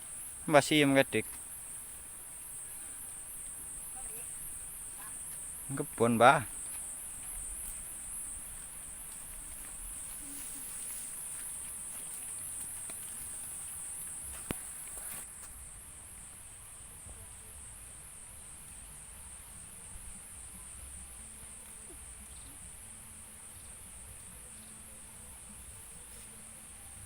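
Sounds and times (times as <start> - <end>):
insects shrilling: 0.0 - 15.3.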